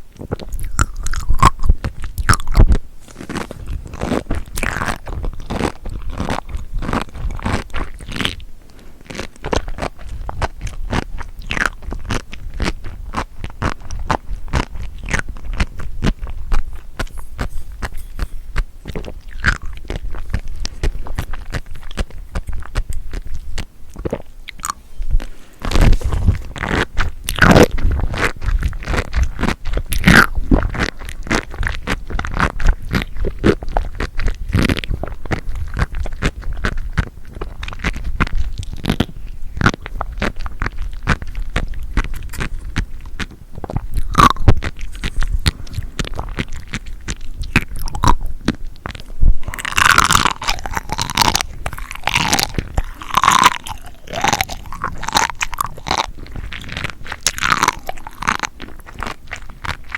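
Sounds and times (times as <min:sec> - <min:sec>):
chewing crunchy wet food: 0:00.0 - 0:59.9.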